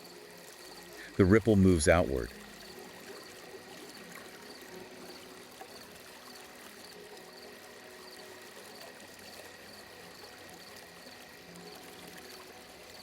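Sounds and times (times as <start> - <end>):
trickle of flowing water: 0.0 - 13.0.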